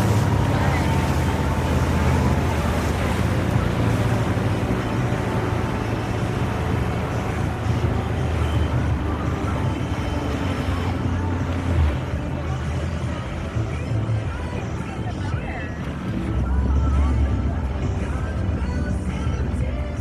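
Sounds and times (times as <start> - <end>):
boat engine droning: 0.0 - 20.0
water rushing past hull: 0.0 - 20.0.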